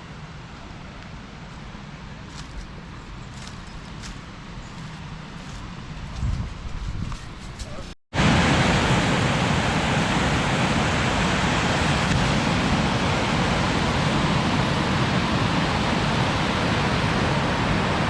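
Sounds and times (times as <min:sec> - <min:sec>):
small waterfall rushing: 0:08.2 - 0:18.0.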